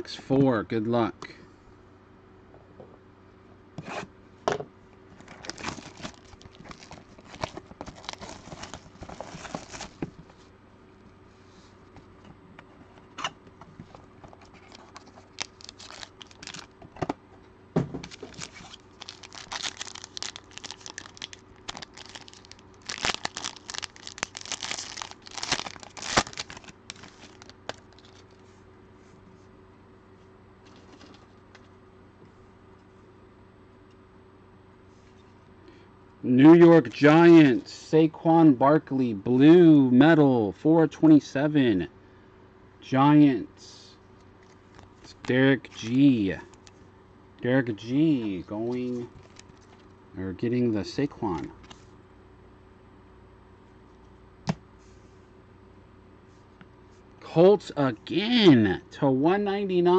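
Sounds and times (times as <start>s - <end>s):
plastic shrink wrap crackling: 5.3s - 10.0s, 14.5s - 16.7s, 18.1s - 28.4s.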